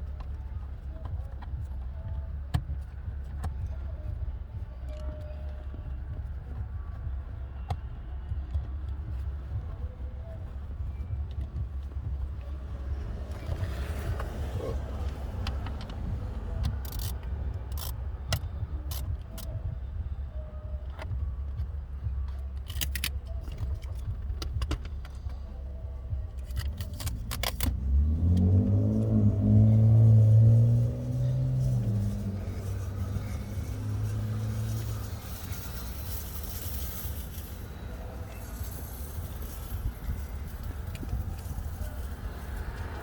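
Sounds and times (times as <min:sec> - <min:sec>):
metallic clicks and rattles: 0:15.4 - 0:19.6, 0:22.5 - 0:25.3.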